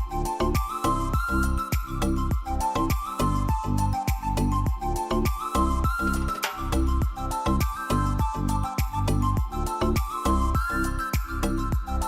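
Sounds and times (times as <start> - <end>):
music with beat and bass line: 0.0 - 12.0.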